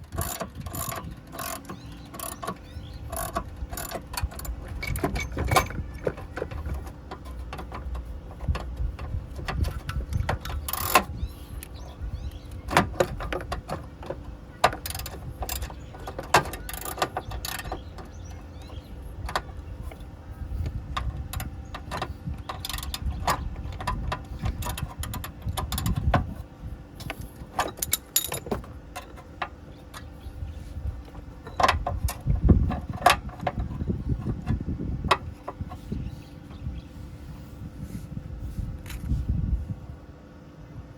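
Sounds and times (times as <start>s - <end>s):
steady low hum: 0.0s - 40.9s
hand tools clinking on metal: 27.6s - 29.4s.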